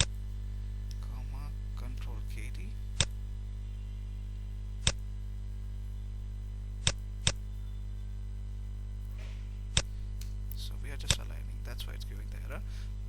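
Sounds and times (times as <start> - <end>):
mains hum: 0.0 - 13.0
computer mouse clicks: 9.7 - 10.4.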